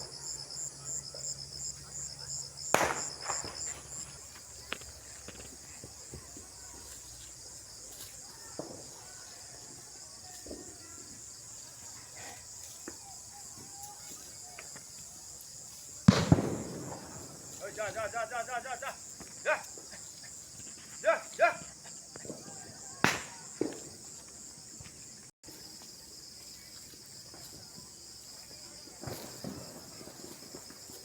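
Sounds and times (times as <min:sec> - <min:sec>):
crickets chirping: 0:00.0 - 0:31.0
loud bang: 0:02.8 - 0:04.0.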